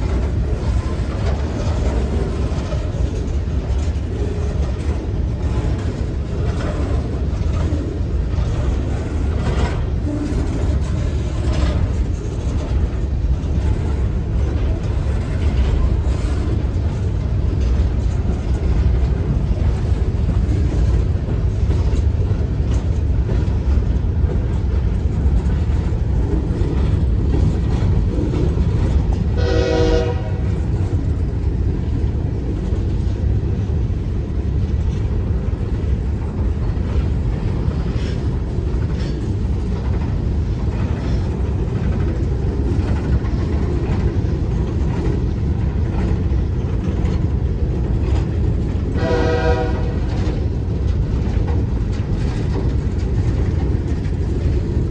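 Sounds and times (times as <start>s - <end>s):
train rumbling past: 0.0s - 54.9s
train horn blasts: 29.4s - 30.6s, 48.9s - 50.2s.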